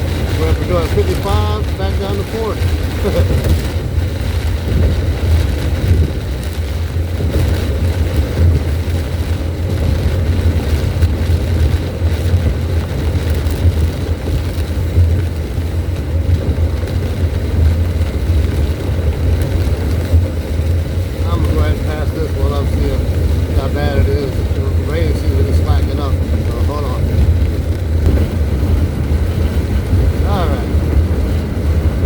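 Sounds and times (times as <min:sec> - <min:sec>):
car road and wind rumble: 0:00.0 - 0:32.0
heavy rain: 0:00.0 - 0:32.0.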